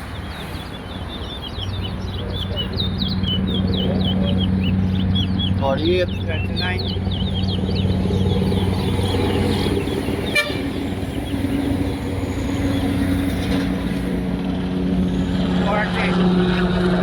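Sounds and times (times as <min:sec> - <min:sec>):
finch chirping: 0:00.0 - 0:13.4
low engine-like hum: 0:01.1 - 0:17.0.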